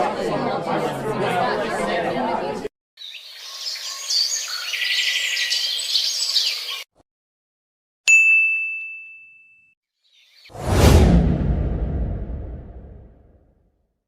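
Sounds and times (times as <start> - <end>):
bell ding: 8.1 - 9.7.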